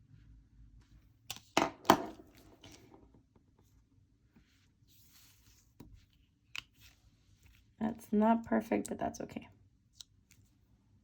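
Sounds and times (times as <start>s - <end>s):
objects knocking on a desk: 1.6s - 2.8s.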